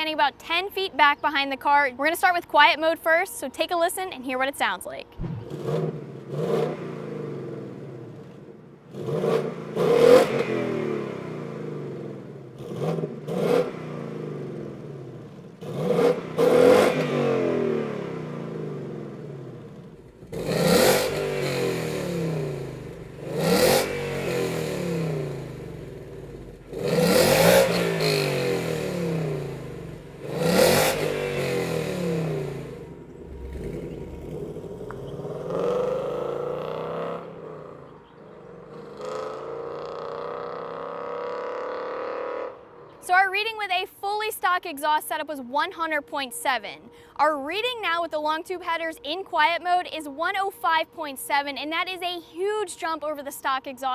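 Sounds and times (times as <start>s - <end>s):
car engine revving: 5.2s - 42.7s.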